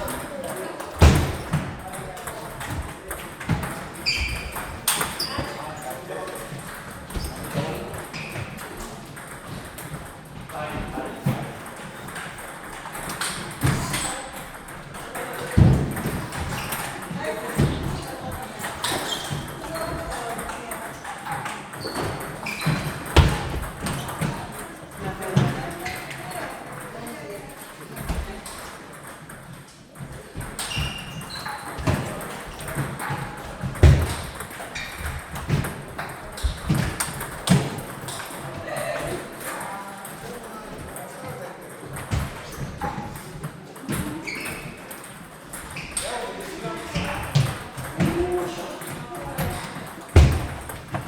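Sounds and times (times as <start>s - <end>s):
table tennis balls knocking: 0.0s - 41.0s
heavier thuds: 50.2s - 51.0s.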